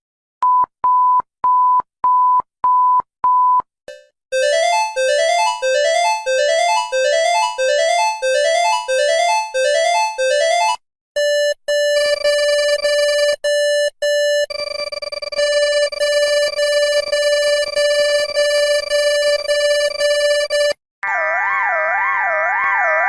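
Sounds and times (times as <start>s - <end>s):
synthesized arpeggio jingle: 3.9s - 20.8s.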